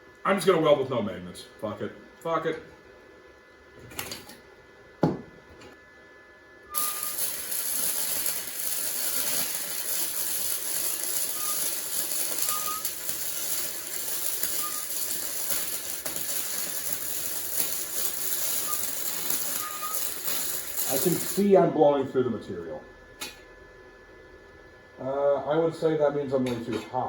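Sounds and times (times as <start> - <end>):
welding arc crackling: 3.8 - 4.4, 6.7 - 21.6
high chirps: 6.8 - 21.3.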